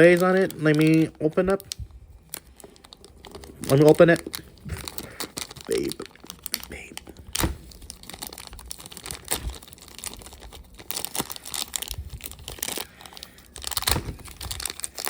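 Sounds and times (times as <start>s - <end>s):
packaging torn and crinkled: 0.0s - 15.0s.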